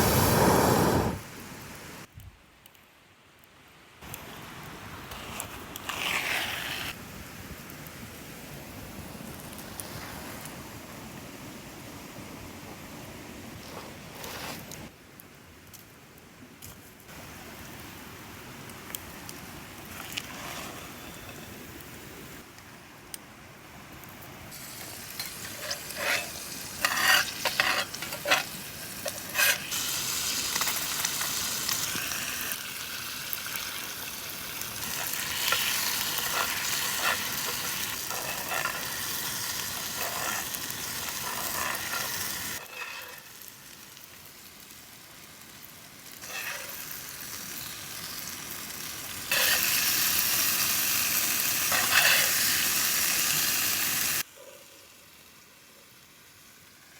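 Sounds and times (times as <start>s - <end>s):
meat sizzling on a griddle: 24.5s - 54.3s.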